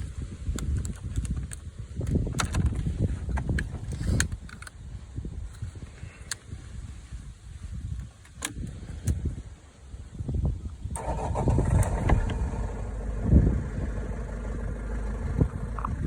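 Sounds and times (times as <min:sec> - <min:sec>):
van engine cranking and starting: 0:10.9 - 0:16.0.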